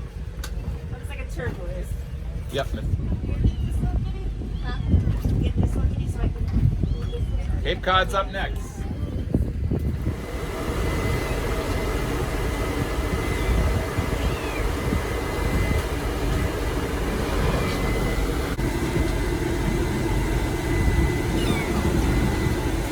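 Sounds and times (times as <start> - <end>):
thin steady whine: 9.9 - 22.9
vehicle engine idling: 9.9 - 22.9.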